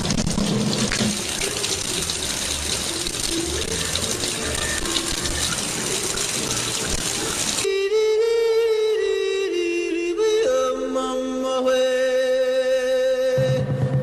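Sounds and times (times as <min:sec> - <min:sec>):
tap water running: 0:00.0 - 0:07.7.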